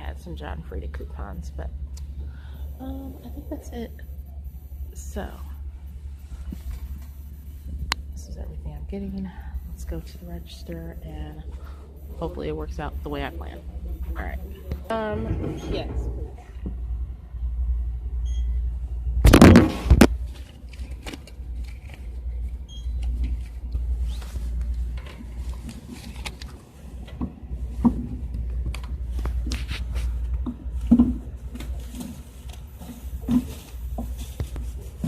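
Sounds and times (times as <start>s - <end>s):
low steady rumble: 0.0s - 35.0s.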